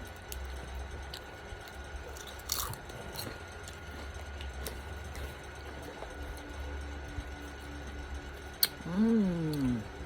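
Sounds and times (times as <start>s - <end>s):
chewing with crunches: 0.0s - 10.0s
steady low hum: 0.0s - 10.0s
biting crunchy chip: 2.0s - 4.8s.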